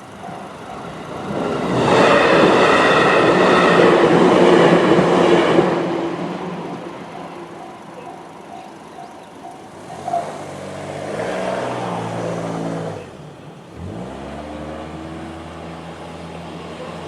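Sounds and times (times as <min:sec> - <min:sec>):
level-crossing warning bell: 0:00.0 - 0:03.8, 0:04.4 - 0:10.4
car engines pulling away: 0:09.7 - 0:17.0.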